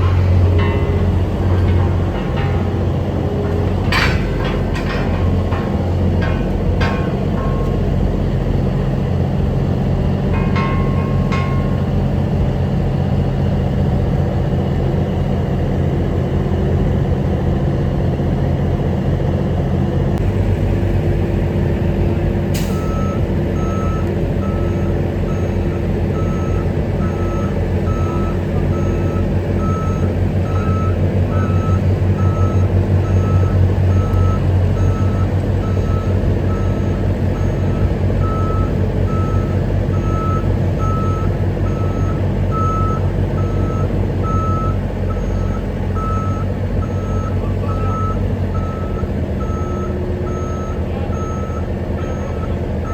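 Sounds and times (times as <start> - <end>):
heavy vehicle engine running: 0.0 - 52.9
backup alarm beeping: 22.6 - 52.9.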